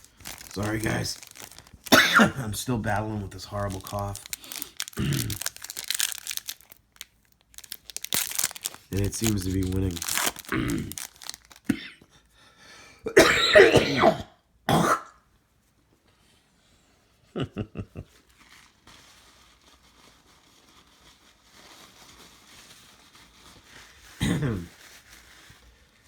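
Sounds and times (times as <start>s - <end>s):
man coughing: 1.9s - 2.5s, 5.0s - 5.4s, 10.5s - 11.0s, 11.7s - 12.1s, 13.1s - 15.1s, 24.2s - 24.7s.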